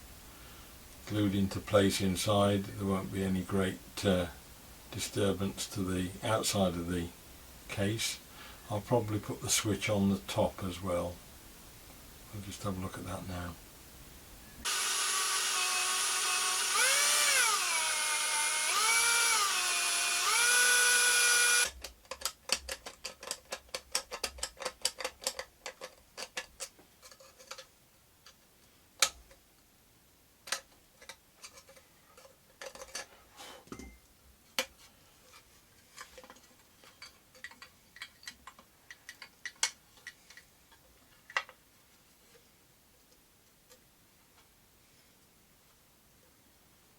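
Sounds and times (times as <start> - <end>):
small power drill running: 14.6 - 21.7.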